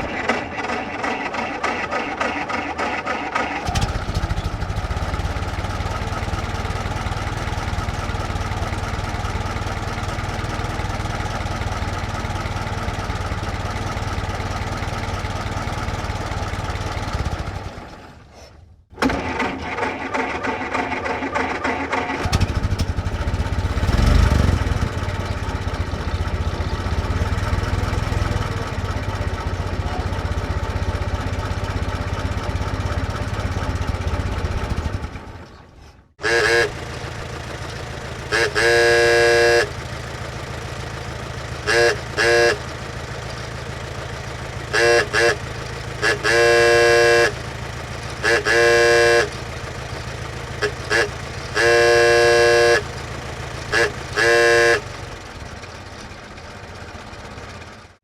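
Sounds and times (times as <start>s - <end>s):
engine hand crank starting: 0.0s - 4.8s, 17.1s - 23.2s
engine revving: 0.0s - 35.4s, 36.2s - 55.4s
old car engine idling: 0.0s - 58.0s.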